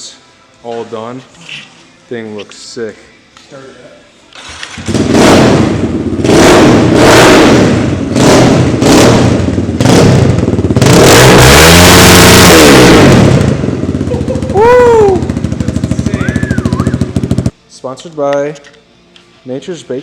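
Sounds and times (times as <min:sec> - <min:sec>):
dirt bike engine revving: 0:04.5 - 0:17.5.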